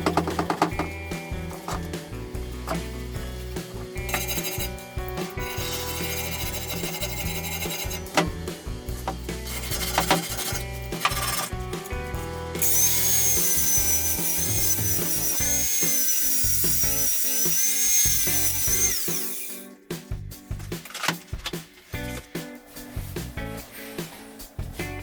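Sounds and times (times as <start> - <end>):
tapping and scraping: 0.0 - 17.1
background music: 0.0 - 25.0
power tool whining: 12.6 - 19.7.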